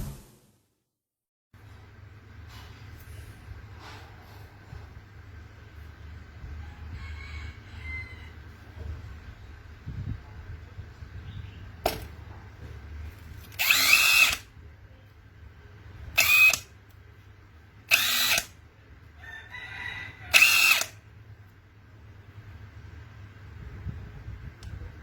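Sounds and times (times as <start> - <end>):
cordless drill whining: 13.5 - 14.4, 16.2 - 16.6, 17.9 - 18.5, 20.3 - 20.9.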